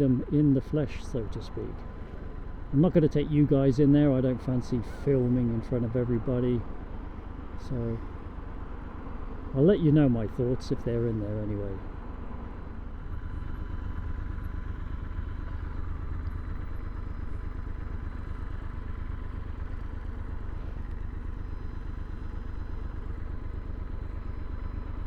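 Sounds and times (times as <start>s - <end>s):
motorcycle engine running: 11.1s - 25.0s.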